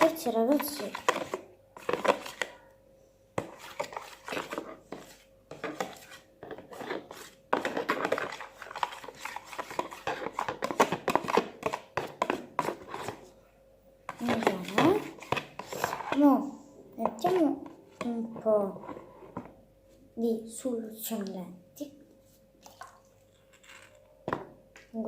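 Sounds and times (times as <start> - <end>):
utensil stirring slime in a bowl: 0.0 - 2.7, 3.4 - 13.4, 14.1 - 19.6, 22.2 - 24.5.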